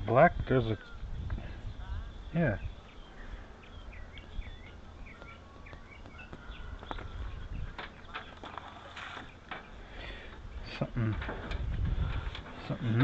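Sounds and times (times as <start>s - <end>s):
birds chirping: 0.0s - 13.0s
handling clicks and rustles: 6.8s - 13.0s.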